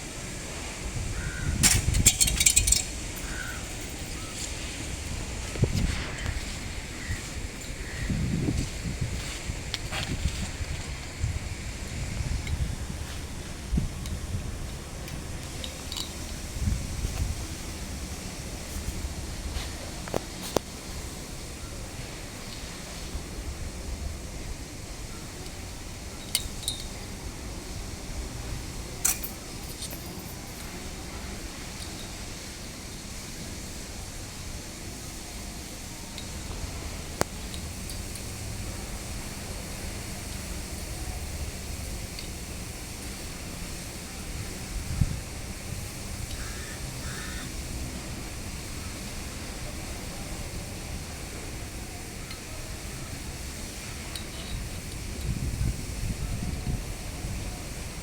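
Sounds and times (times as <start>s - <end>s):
wind buffeting microphone: 0.0s - 20.4s, 36.6s - 49.5s, 54.5s - 58.0s
sharp metallic clinks: 1.7s - 4.2s, 29.0s - 30.9s
faint bird calls: 3.2s - 4.4s, 46.4s - 47.5s.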